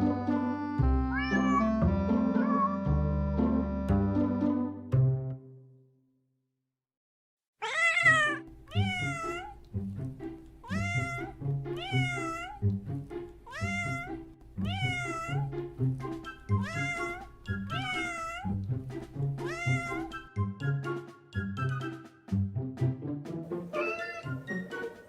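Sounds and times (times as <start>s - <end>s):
background music: 0.0s - 5.7s, 8.1s - 25.0s
cat meowing: 1.1s - 1.8s, 2.4s - 2.8s, 7.6s - 9.6s, 10.6s - 12.7s, 13.5s - 15.5s, 16.4s - 18.6s, 19.4s - 20.2s, 23.8s - 24.4s.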